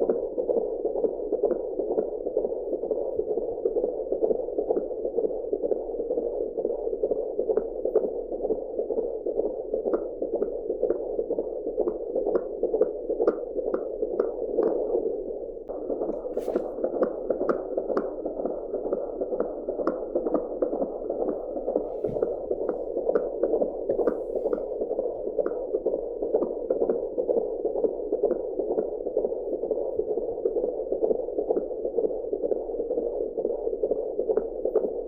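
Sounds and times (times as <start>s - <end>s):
rhythmic whooshing heartbeat pulse: 15.7s - 34.8s.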